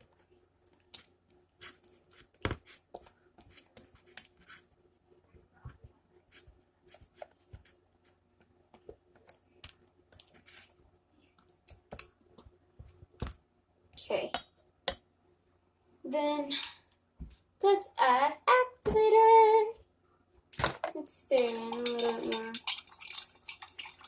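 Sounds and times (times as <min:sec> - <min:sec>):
slime stirred in a bowl: 0:00.0 - 0:04.8, 0:05.4 - 0:12.5, 0:21.1 - 0:24.0.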